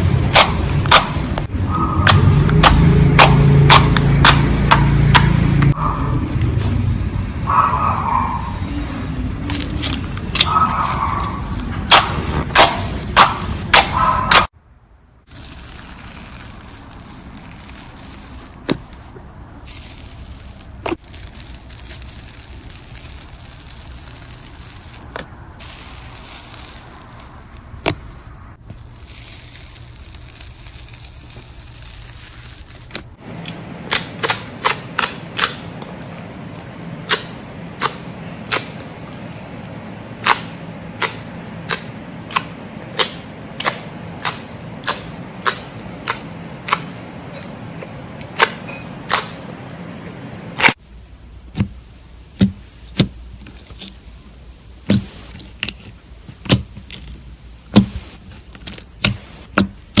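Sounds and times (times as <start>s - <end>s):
steady hiss: 14.7s - 33.4s, 50.7s - 60.0s.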